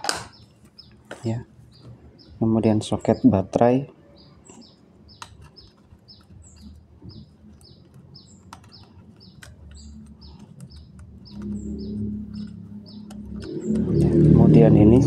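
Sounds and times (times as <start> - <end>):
small bird chirping: 0.2 - 15.0.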